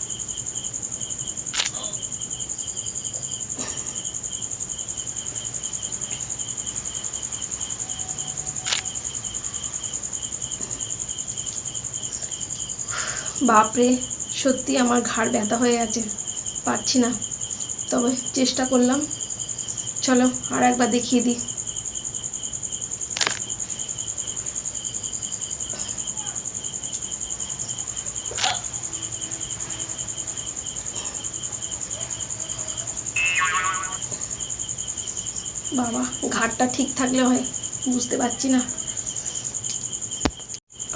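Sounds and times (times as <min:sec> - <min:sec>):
crickets chirping: 0:00.0 - 0:40.9
sharp clicks: 0:01.5 - 0:01.8, 0:08.6 - 0:08.9, 0:23.2 - 0:23.5
sharp click: 0:23.2 - 0:23.4
short voice-like sound: 0:33.2 - 0:34.1.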